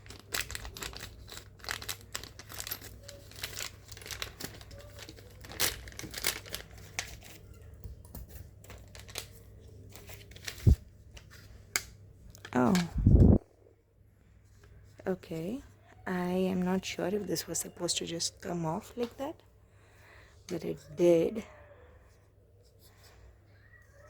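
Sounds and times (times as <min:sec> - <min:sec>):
packaging crinkling and tearing: 0:00.0 - 0:07.5, 0:08.6 - 0:11.4.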